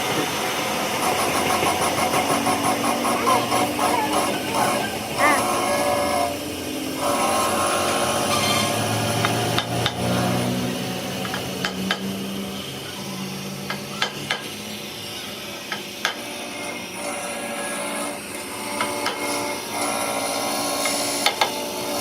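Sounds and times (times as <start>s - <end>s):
tools knocking on metal: 11.2s - 12.1s, 13.7s - 14.5s.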